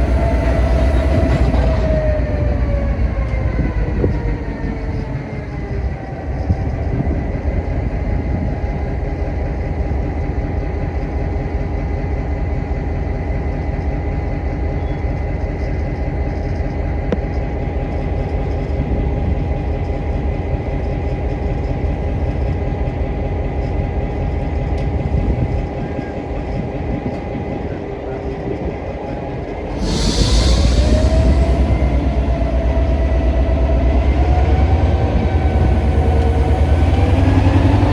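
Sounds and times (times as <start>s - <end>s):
thin steady whine: 0.0s - 2.8s, 29.7s - 37.9s
loud rush of noise: 0.0s - 3.1s, 29.7s - 37.9s
diesel locomotive rumble: 0.0s - 37.9s.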